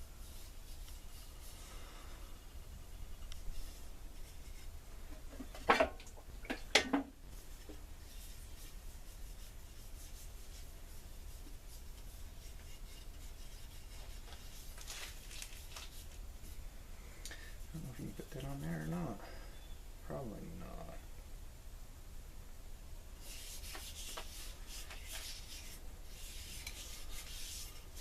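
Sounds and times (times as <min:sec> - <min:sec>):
rubbing oil into wood: 0:07.3 - 0:16.6, 0:23.2 - 0:28.0.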